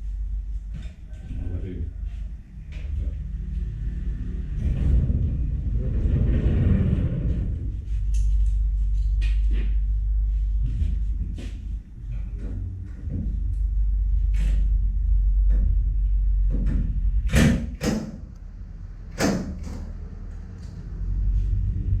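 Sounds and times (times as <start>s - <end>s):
steady low rumble: 0.0s - 22.0s.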